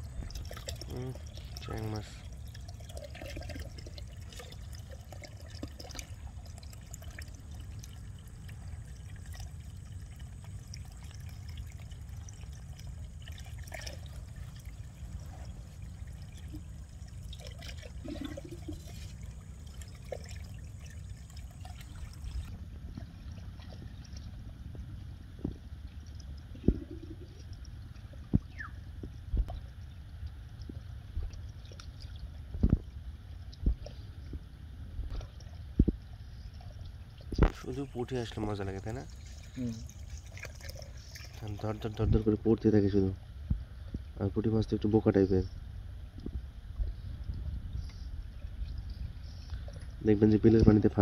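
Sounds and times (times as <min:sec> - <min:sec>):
water pouring and trickling: 0:00.0 - 0:51.0.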